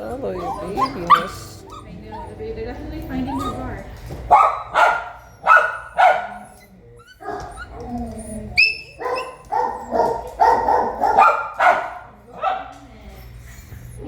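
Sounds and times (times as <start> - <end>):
dog yipping: 0.0 - 14.0
dog barking: 0.2 - 2.2, 3.3 - 7.8, 8.6 - 12.9.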